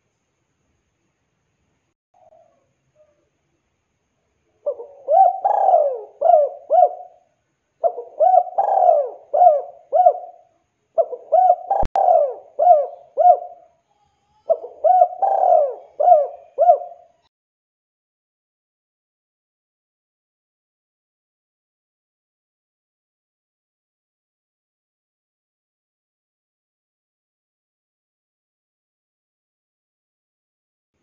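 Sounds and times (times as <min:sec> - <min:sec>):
dove cooing: 0:04.6 - 0:07.2, 0:07.8 - 0:13.8, 0:14.4 - 0:17.2.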